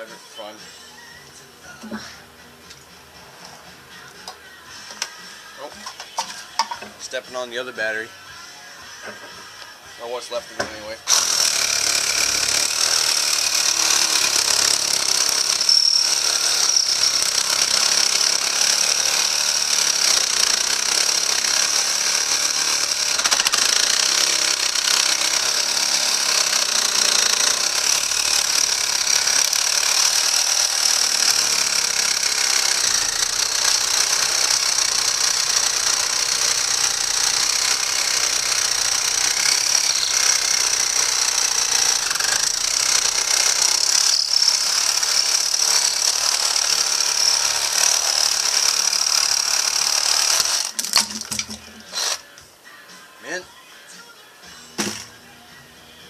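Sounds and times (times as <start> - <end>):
reciprocating saw cutting plastic: 11.1 - 52.4.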